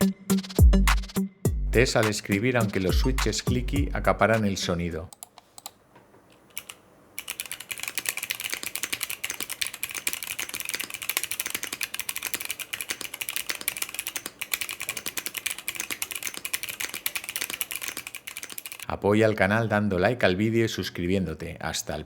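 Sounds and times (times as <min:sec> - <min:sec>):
clicky keyboard typing: 0:05.1 - 0:18.9.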